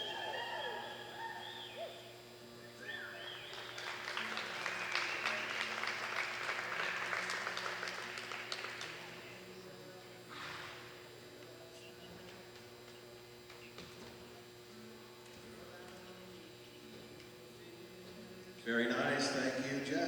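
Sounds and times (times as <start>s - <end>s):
short cheering calls: 0.0s - 9.3s
audience applauding: 3.2s - 9.4s.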